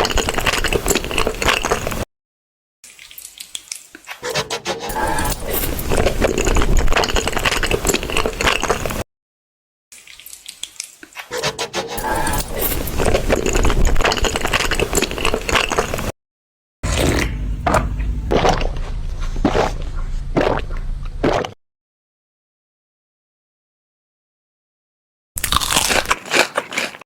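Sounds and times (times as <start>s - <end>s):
wet chewing and crunching: 0.0s - 2.0s, 5.4s - 9.0s, 10.0s - 11.3s, 12.4s - 16.1s, 16.9s - 21.6s, 25.4s - 27.0s.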